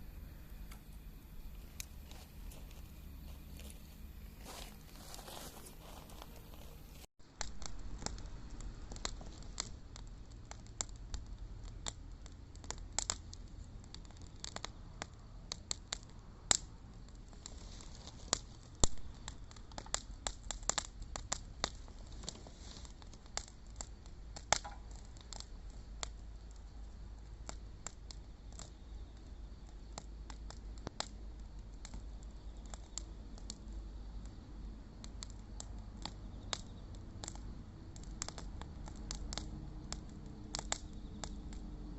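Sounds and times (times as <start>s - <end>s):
low rumble: 0.0s - 10.0s
bonfire crackling and popping: 0.0s - 41.9s.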